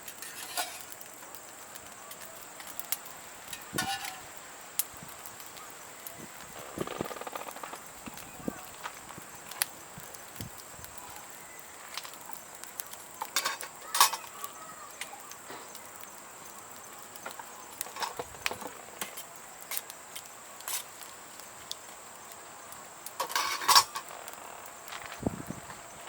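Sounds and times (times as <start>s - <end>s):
metal utensils clattering on pot: 0.1s - 0.9s, 3.5s - 4.3s, 13.2s - 14.3s, 17.8s - 19.2s, 23.2s - 24.1s.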